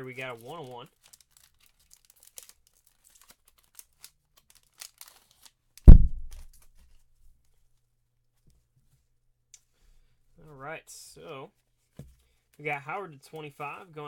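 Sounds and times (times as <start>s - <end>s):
foil card packs crinkling: 0.1s - 5.5s
deep thump on table: 5.9s - 6.4s.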